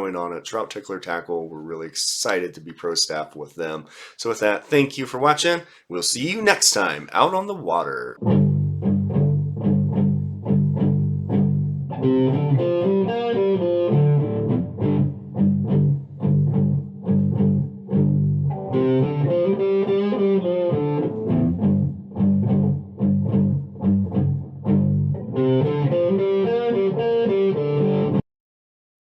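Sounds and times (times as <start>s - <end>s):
guitars and bass music: 8.2s - 28.2s.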